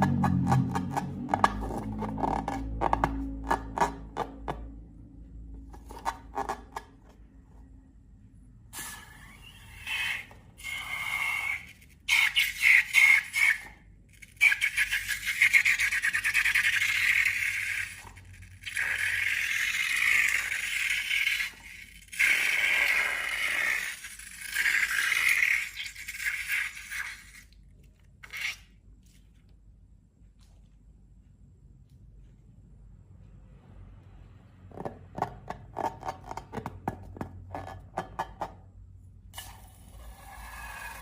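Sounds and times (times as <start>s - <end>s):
slime scraping: 0.0s - 4.7s, 5.6s - 7.4s, 8.8s - 29.5s, 39.4s - 41.0s.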